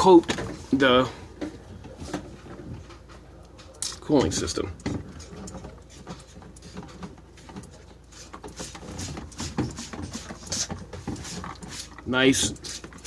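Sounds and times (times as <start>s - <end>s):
faint handling noise: 0.0s - 9.3s.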